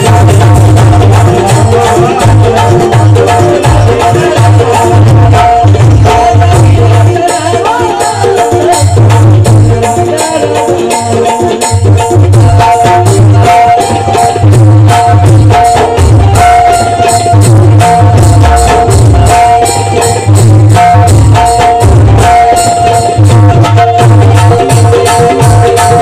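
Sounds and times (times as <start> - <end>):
low drum beat: 0.0 - 26.0
rattling shaker percussion: 0.0 - 26.0
repeated melodic phrase: 12.3 - 26.0.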